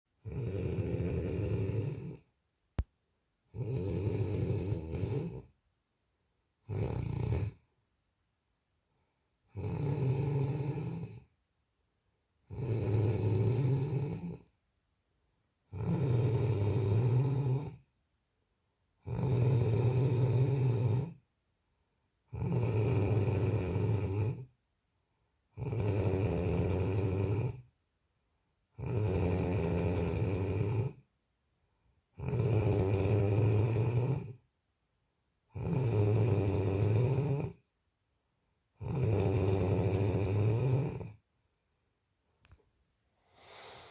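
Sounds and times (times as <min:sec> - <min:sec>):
person snoring: 0:00.2 - 0:02.3, 0:03.5 - 0:05.5, 0:06.7 - 0:07.6, 0:09.5 - 0:11.2, 0:15.7 - 0:17.8, 0:38.8 - 0:41.1, 0:43.2 - 0:43.9.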